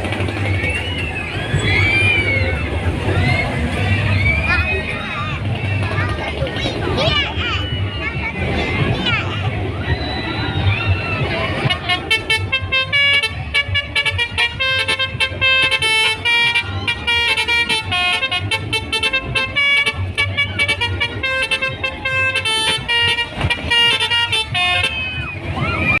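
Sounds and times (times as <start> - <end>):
musical horn tune: 11.6 - 25.2.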